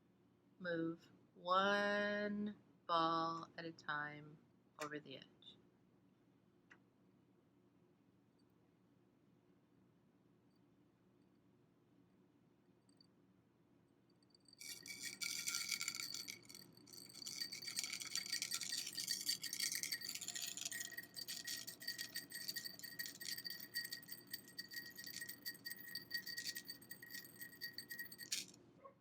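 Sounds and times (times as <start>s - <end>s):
metal ball chain rattling on glass: 14.4s - 28.6s.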